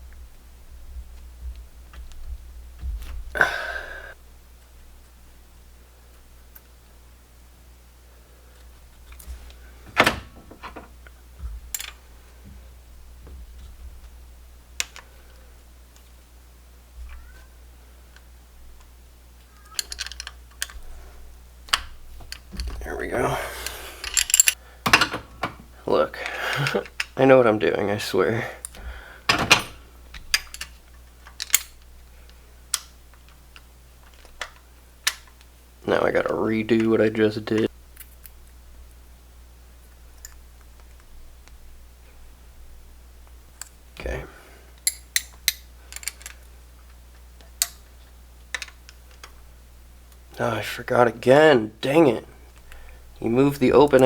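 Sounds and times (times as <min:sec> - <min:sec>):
hand tools clicking on metal: 0:19.4 - 0:20.8, 0:23.4 - 0:27.2, 0:44.7 - 0:46.5
metal tools clinking on engine: 0:23.6 - 0:25.6, 0:29.3 - 0:30.7.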